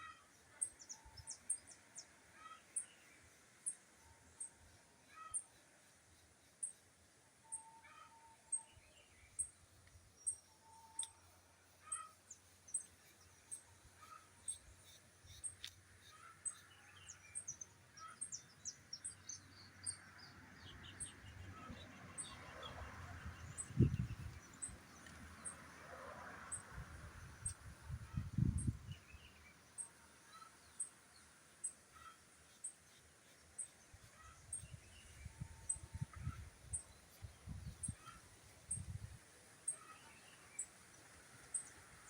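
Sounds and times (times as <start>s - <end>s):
birds calling and chirping: 7.5s - 25.6s, 31.6s - 41.8s.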